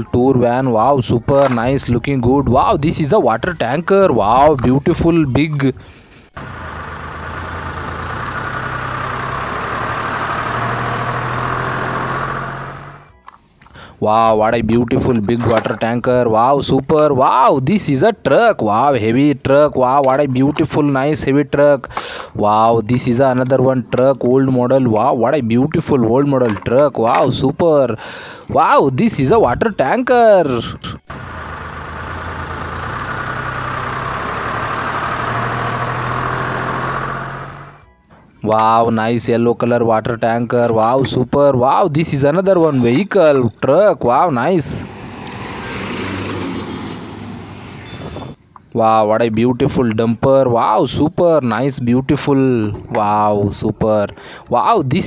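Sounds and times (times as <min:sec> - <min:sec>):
engine idling: 0:06.4 - 0:13.1, 0:31.1 - 0:37.8.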